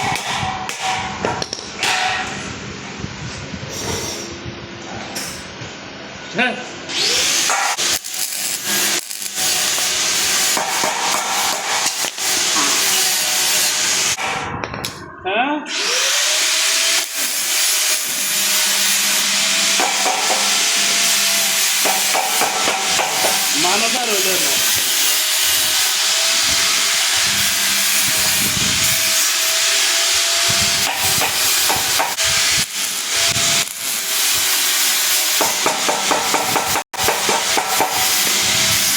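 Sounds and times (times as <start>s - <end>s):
arc welding crackling sizzle: 7.0s - 14.2s, 15.8s - 38.9s.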